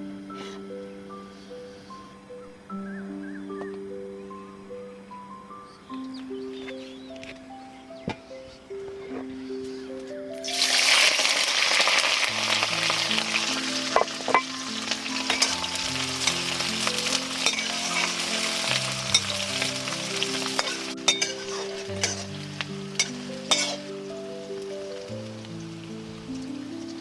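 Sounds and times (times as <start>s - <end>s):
food sizzling in hot oil: 10.4s - 27.0s
utensil clicking against pan: 15.2s - 23.9s.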